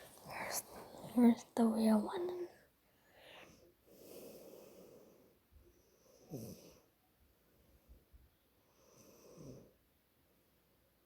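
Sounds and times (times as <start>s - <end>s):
girl breathing: 3.0s - 5.2s.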